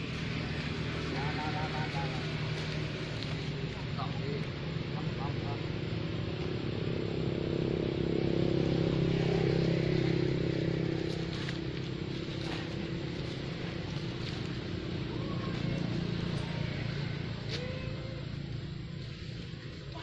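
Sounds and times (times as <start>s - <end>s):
vehicle engine drone: 0.0s - 20.0s.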